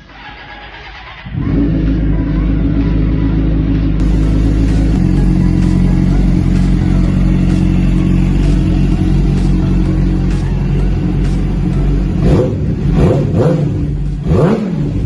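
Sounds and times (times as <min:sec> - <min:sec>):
motorcycle engine running: 0:00.8 - 0:15.0.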